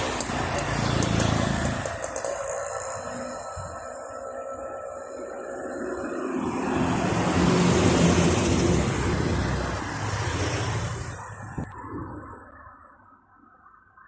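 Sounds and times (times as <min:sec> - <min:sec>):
motor vehicle passing: 0:06.0 - 0:11.7.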